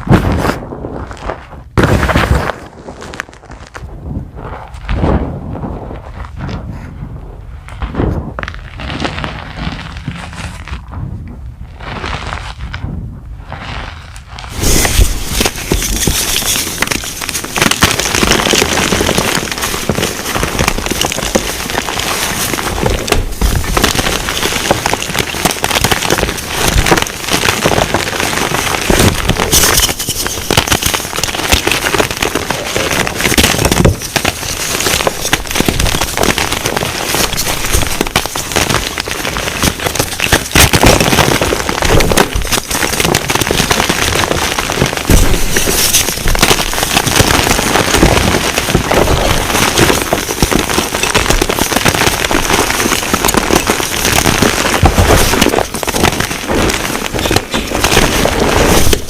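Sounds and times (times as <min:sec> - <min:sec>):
chalk blocks crunching: 0:13.8 - 0:59.0.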